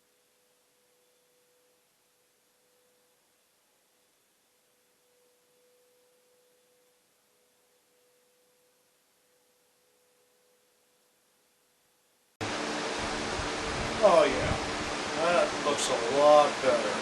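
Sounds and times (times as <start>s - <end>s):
faint hiss: 0.0s - 12.4s
faint steady tone: 0.0s - 12.4s.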